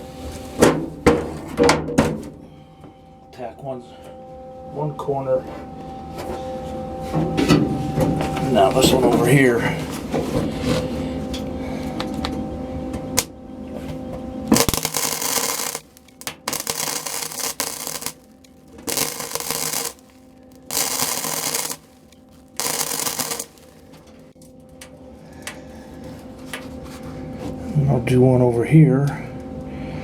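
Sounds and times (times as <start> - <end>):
faint steady hum: 2.4 - 30.0
crackling welding arc: 14.5 - 24.0.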